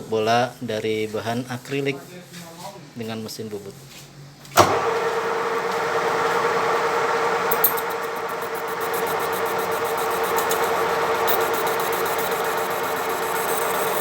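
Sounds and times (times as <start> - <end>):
lathe humming: 4.7 - 14.0
fast high ticking: 7.6 - 14.0.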